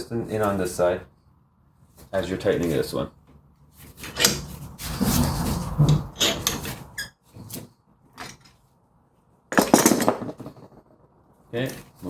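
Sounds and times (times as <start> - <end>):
metal tools scraping and knocking: 4.0 - 4.5, 5.9 - 7.6, 8.2 - 8.6, 9.5 - 10.8
short squeak: 6.2 - 7.4.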